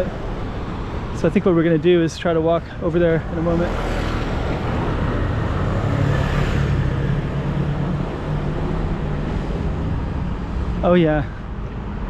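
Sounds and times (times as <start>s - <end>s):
vehicle passing close by: 3.2s - 10.8s.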